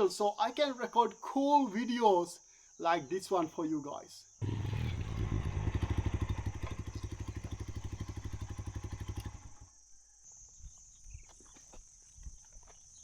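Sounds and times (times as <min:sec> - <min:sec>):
motorcycle engine idling: 0:04.4 - 0:09.8.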